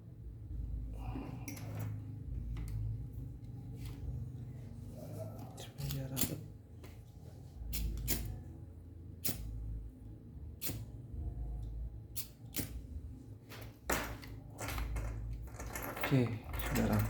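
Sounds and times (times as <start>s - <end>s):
lighter and wire clicks: 7.7s - 8.4s, 9.2s - 9.6s, 10.6s - 10.9s, 12.1s - 12.8s.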